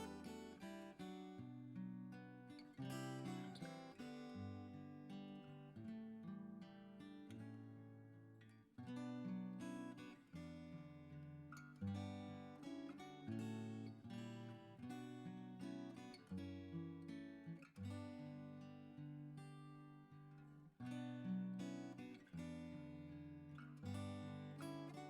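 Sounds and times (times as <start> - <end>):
acoustic guitar strumming: 0.0 - 0.7.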